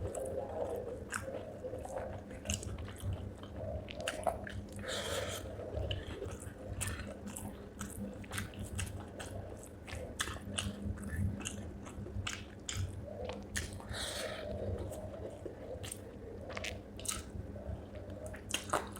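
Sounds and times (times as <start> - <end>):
chewing and crunching: 0.0 - 18.9.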